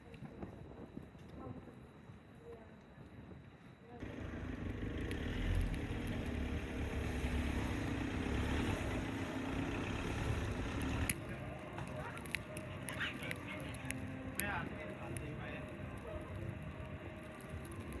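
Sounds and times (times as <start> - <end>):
engine rumbling: 4.0 - 18.0.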